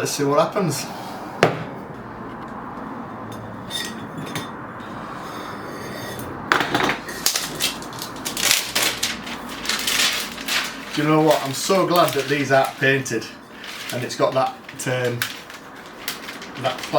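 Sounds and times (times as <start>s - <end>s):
plastic scraping and rustling: 6.6s - 16.9s.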